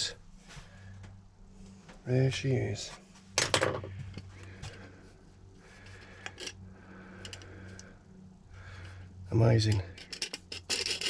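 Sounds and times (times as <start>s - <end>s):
salt mill grinding: 9.7s - 11.0s.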